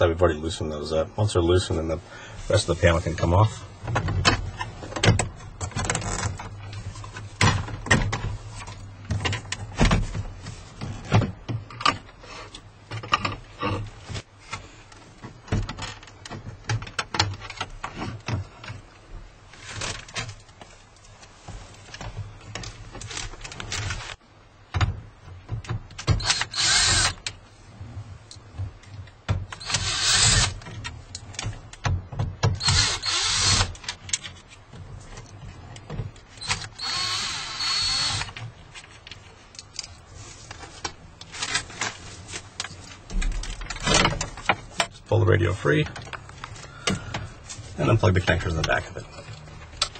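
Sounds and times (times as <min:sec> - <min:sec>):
power screwdriver whirring: 0:26.2 - 0:27.2, 0:29.6 - 0:30.6, 0:32.6 - 0:33.7, 0:36.4 - 0:38.4.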